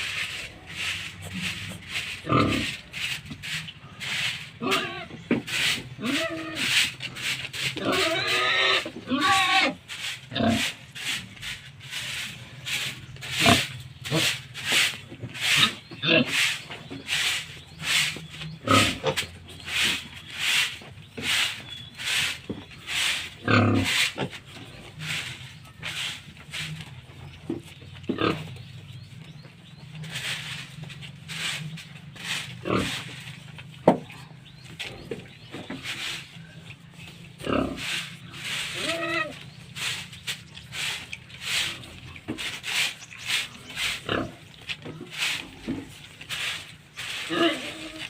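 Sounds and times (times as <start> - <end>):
pigs grunting: 0.0 - 11.3, 12.0 - 20.0, 22.8 - 27.1, 28.1 - 28.7, 30.0 - 48.0
short rustling scrapes: 0.0 - 33.8, 34.6 - 48.0
pig squeals: 4.6 - 7.0, 7.8 - 9.8, 38.6 - 39.5.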